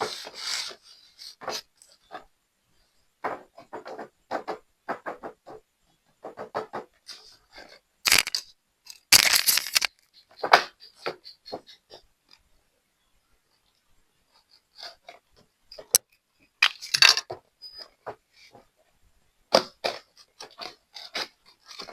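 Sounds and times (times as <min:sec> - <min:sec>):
packaging crinkling: 0:08.1 - 0:09.9
plastic toy packaging handled: 0:08.1 - 0:10.0.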